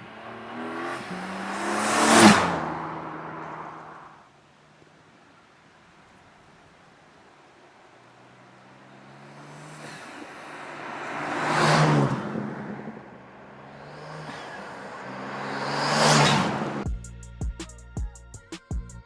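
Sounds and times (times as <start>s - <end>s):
car engine driving past: 0.0s - 4.2s, 8.1s - 16.9s.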